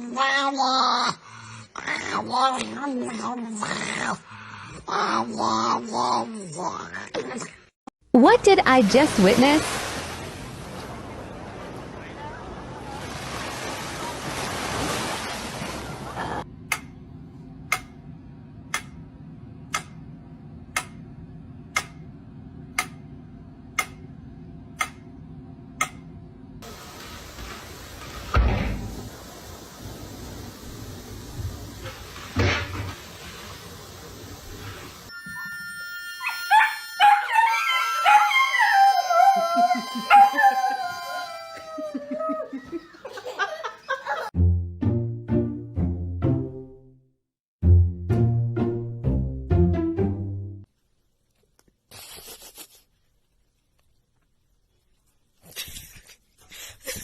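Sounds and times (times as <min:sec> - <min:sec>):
dog howling: 0:36.2 - 0:42.5.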